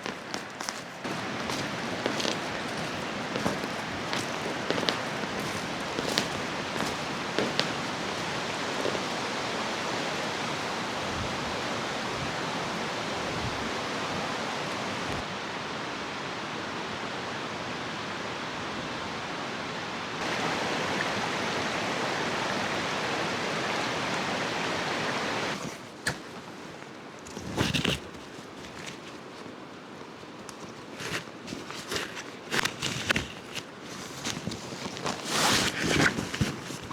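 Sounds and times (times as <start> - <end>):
mountain stream rushing: 0.0 - 26.0.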